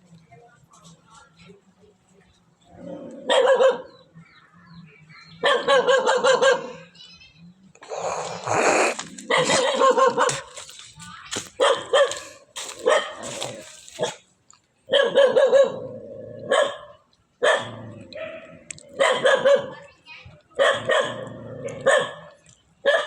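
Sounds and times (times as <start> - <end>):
dog barking: 3.2 - 4.0, 5.4 - 6.8, 8.5 - 10.6, 11.6 - 14.2, 14.9 - 15.9, 16.5 - 19.8, 20.6 - 23.0.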